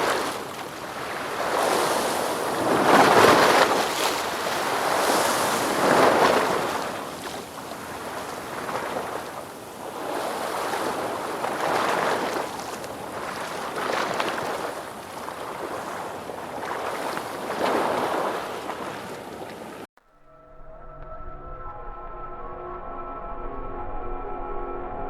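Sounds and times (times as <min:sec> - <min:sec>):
ocean surf washing: 0:00.0 - 0:19.9
soft ambient music: 0:20.1 - 0:25.0.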